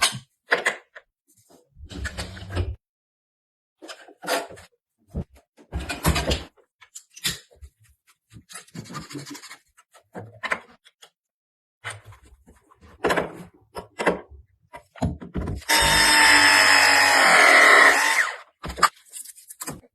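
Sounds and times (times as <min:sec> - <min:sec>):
power tool running: 0:15.7 - 0:18.4.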